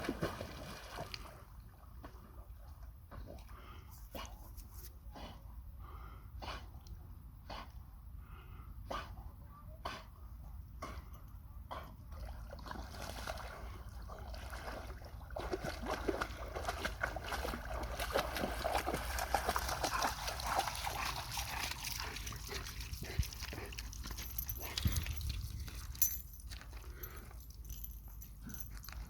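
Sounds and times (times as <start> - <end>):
dog splashing in water: 0.0 - 1.4, 12.2 - 25.3.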